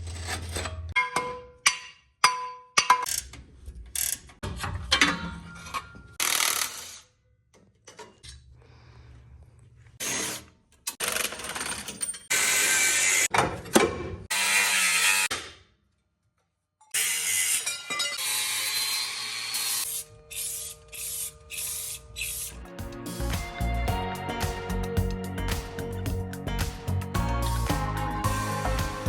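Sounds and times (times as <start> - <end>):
power tool rasping: 17.0 - 22.6.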